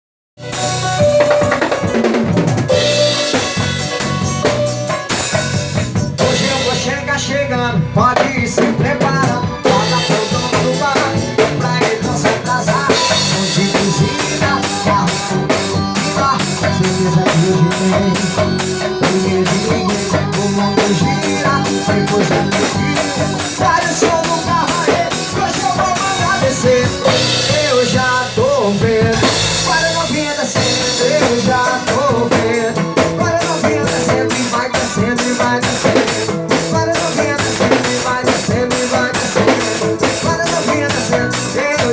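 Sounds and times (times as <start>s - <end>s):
drum kit beat: 0.4s - 7.2s, 8.1s - 41.9s
loud upbeat music: 0.4s - 41.9s.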